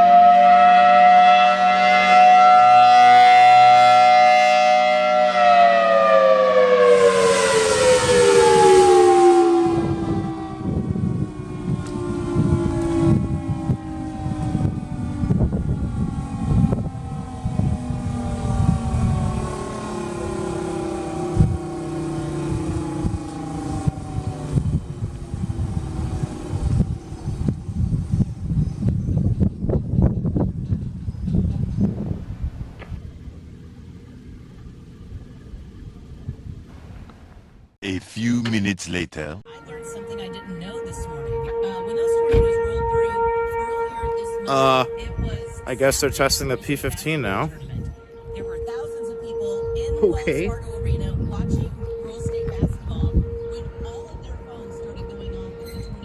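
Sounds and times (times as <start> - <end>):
warning siren wailing: 0.0 - 30.5, 38.4 - 56.0
low gusty rumble: 7.7 - 20.0, 21.2 - 37.8, 47.5 - 56.0.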